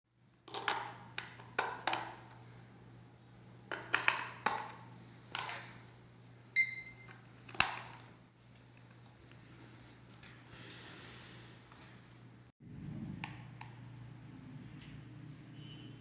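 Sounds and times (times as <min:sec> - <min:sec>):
short electronic beep: 0:06.6 - 0:07.1.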